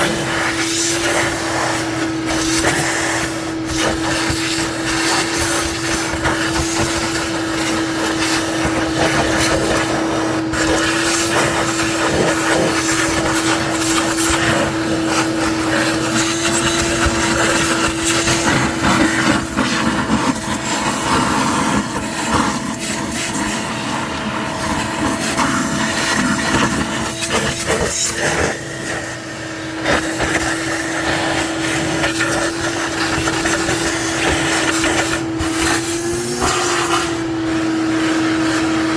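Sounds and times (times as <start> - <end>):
shop vacuum whining: 0.0 - 38.9.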